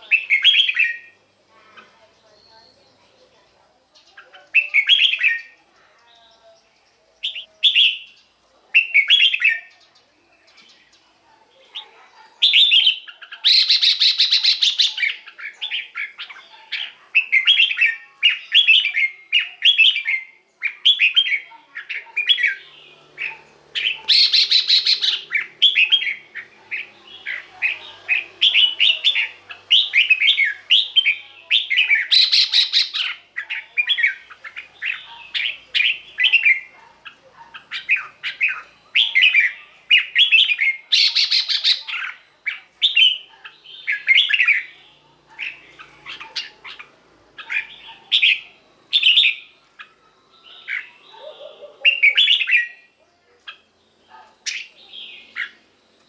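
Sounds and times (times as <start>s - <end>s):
bird singing warbled phrases: 0.0s - 56.0s
harsh rasping bird call: 22.6s - 33.3s.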